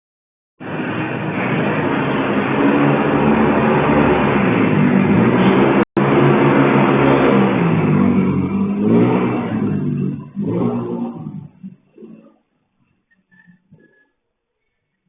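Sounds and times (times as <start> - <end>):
vehicle engine running: 0.6 - 12.3.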